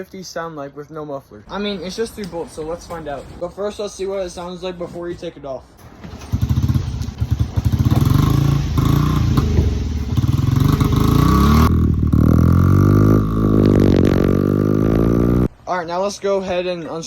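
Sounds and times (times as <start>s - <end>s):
dirt bike engine revving: 6.0s - 15.5s.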